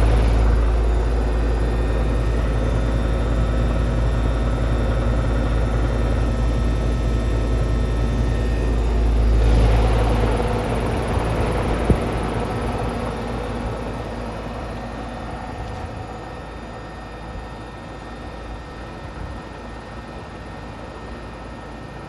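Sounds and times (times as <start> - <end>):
deep rumble: 0.0 - 16.0
heat pump unit humming: 0.0 - 22.0.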